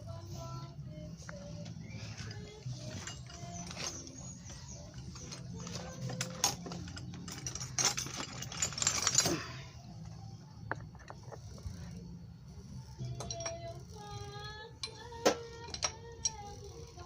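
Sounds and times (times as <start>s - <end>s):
metal hand tools clinking: 1.4s - 9.6s, 13.0s - 17.0s.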